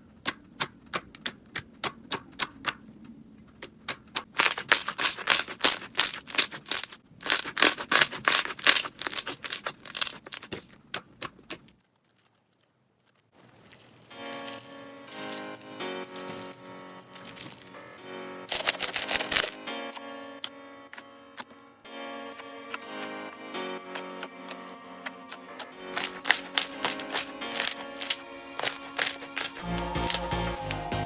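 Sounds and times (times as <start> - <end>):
music: 14.1 - 31.0.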